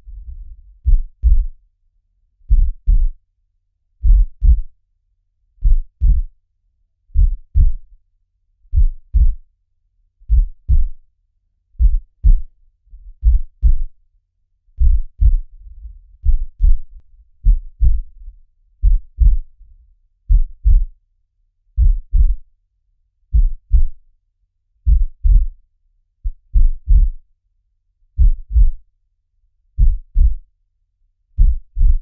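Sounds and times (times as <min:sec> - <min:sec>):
heartbeat double thump: 0:00.0 - 0:01.5, 0:02.5 - 0:03.1, 0:04.0 - 0:04.7, 0:05.6 - 0:06.3, 0:07.2 - 0:07.8, 0:08.7 - 0:09.4, 0:10.3 - 0:11.0, 0:11.8 - 0:12.5, 0:13.2 - 0:13.9, 0:14.8 - 0:18.2, 0:18.8 - 0:19.6, 0:20.3 - 0:20.9, 0:21.8 - 0:22.4, 0:23.3 - 0:23.9, 0:24.9 - 0:25.5, 0:26.3 - 0:27.2, 0:28.2 - 0:28.8, 0:29.8 - 0:30.4, 0:31.4 - 0:32.0.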